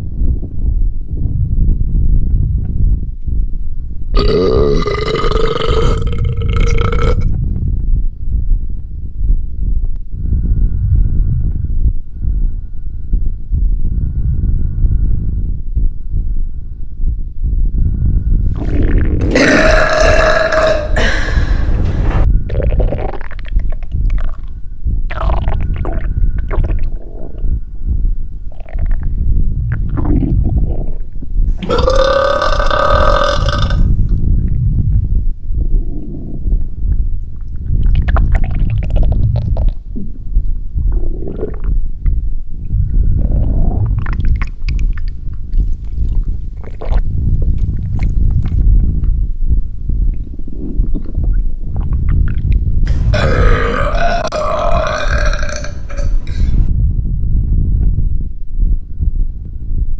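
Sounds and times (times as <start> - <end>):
steady low rumble: 0.0 - 59.9
long burp: 4.2 - 7.4, 18.6 - 22.3, 31.6 - 34.0, 52.9 - 56.7
stomach gurgling: 4.2 - 7.7, 18.4 - 27.6, 28.5 - 34.6, 35.6 - 56.7.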